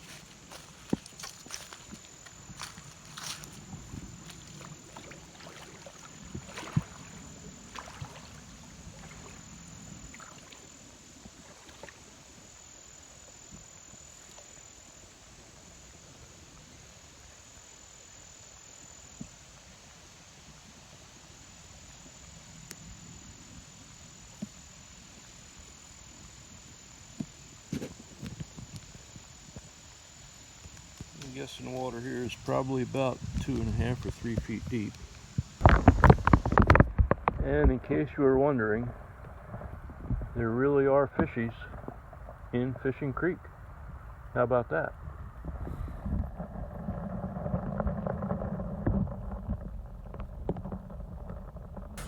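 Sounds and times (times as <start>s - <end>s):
footsteps: 0.0s - 8.4s
creek water running: 0.0s - 22.7s
crickets trilling: 0.0s - 52.0s.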